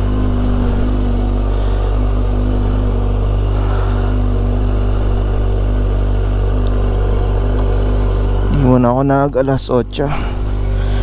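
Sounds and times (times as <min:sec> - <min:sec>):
motorcycle engine running steadily: 0:00.0 - 0:11.0.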